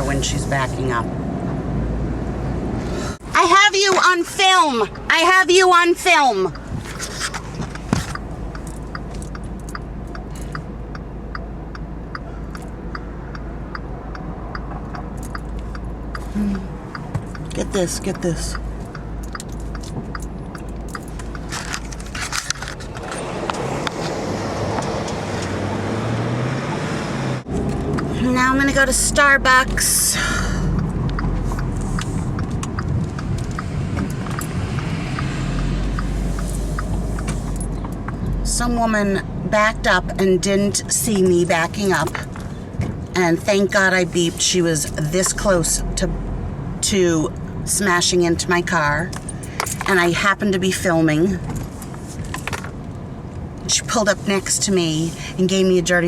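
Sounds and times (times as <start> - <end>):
low car hum: 0.0 - 56.0
turn-signal indicator ticking: 3.4 - 22.1, 27.6 - 46.2.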